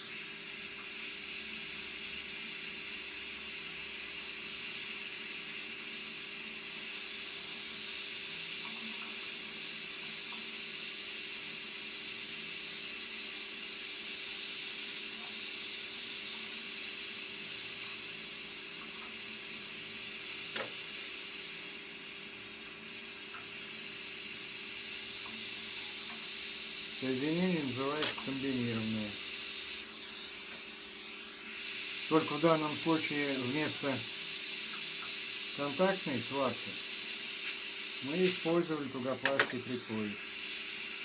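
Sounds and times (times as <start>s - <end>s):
torch flame hissing: 0.0s - 41.0s
sharp click: 20.6s - 20.8s.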